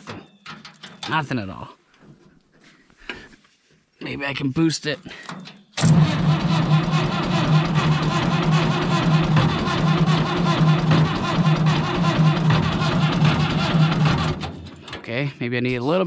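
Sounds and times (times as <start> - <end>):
tractor engine cranking on starter: 5.2 - 15.3.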